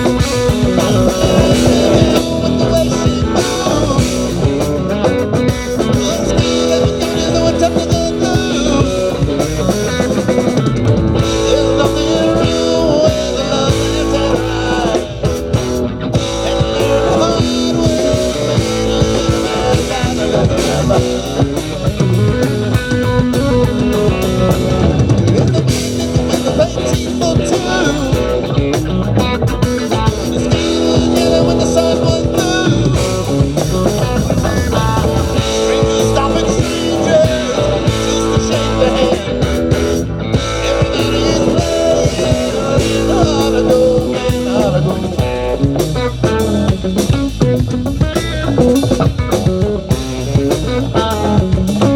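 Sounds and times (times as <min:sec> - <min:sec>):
bass guitar: 0:00.0 - 0:51.9
drum kit: 0:00.0 - 0:51.9
electric guitar: 0:00.0 - 0:51.9
person singing: 0:00.0 - 0:51.9.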